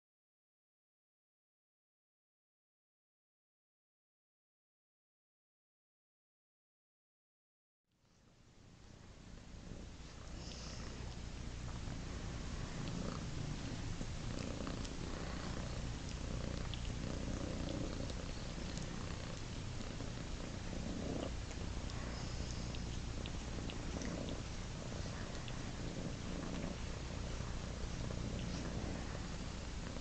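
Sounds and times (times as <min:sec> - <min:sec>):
cat purring: 0:08.0 - 0:30.0.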